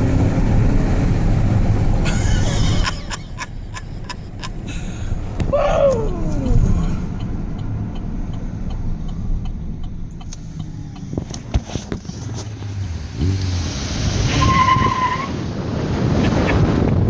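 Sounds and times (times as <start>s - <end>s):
truck engine running: 0.0s - 13.4s.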